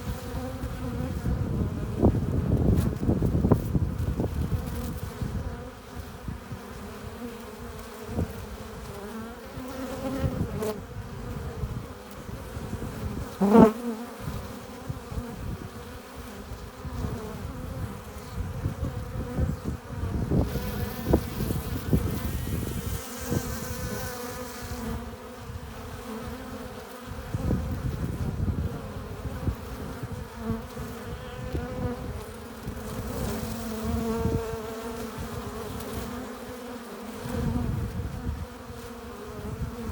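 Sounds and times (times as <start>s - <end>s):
single bee passing close: 0.0s - 39.9s
bees buzzing: 20.1s - 26.9s.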